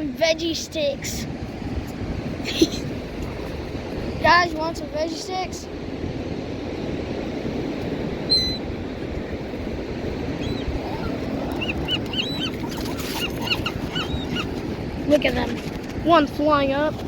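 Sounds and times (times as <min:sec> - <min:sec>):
rushing water: 0:00.0 - 0:17.0
wind: 0:00.0 - 0:17.0
birds calling: 0:08.1 - 0:14.9.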